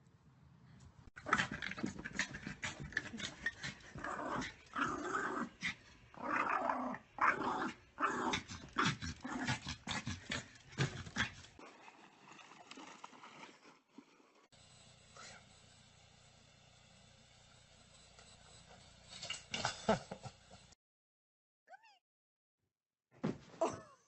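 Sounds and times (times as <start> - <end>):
dog growling: 1.2 - 11.5.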